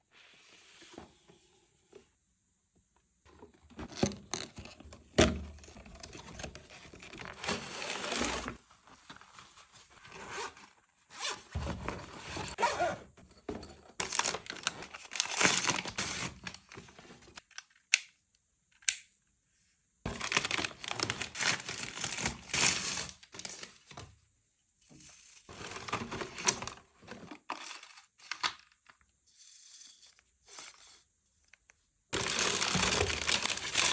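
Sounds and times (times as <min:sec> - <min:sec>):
packaging tearing and crinkling: 0:14.0 - 0:16.7, 0:20.1 - 0:23.5, 0:32.2 - 0:33.9.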